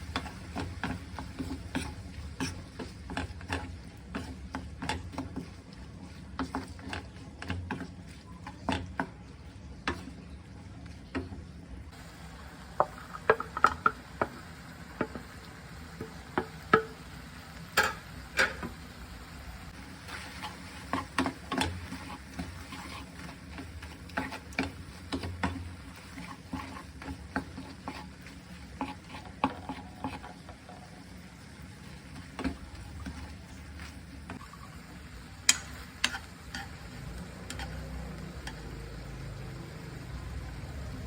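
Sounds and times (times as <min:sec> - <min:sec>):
utensil scraping against pan: 0:00.0 - 0:10.2, 0:19.7 - 0:34.4, 0:35.5 - 0:38.8
food sizzling in a pan: 0:00.0 - 0:41.0.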